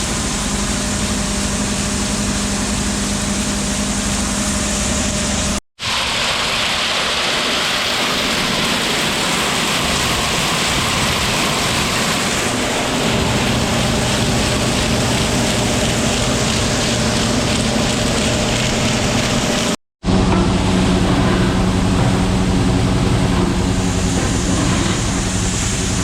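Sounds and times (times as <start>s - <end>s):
farm machinery running: 0.0s - 26.0s
low hum: 12.7s - 26.0s.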